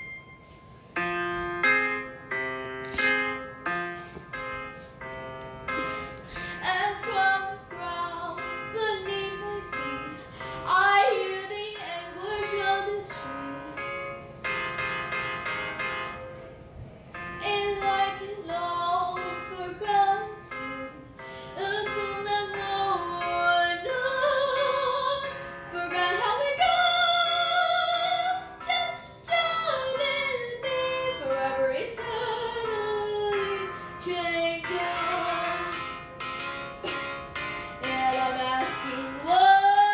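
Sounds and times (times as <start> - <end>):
woman singing a slow ballad: 6.4 - 13.9, 17.4 - 35.9, 37.6 - 39.9.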